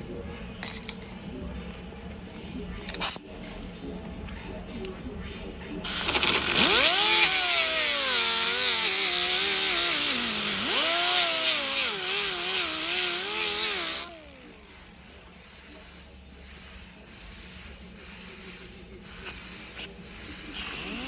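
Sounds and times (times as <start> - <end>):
hiss of cutting plastic: 5.9 - 14.3
power tool motor whine: 5.9 - 14.7.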